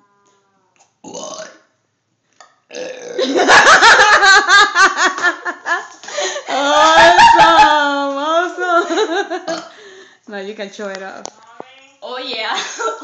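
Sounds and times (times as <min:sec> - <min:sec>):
people laughing hard: 0:03.2 - 0:08.0.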